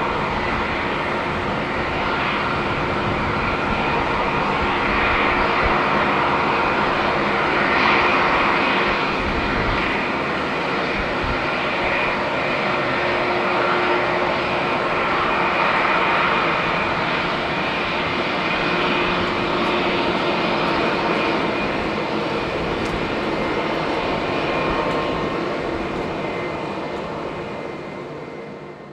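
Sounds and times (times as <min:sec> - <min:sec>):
jet engine roar: 0:00.0 - 0:28.9.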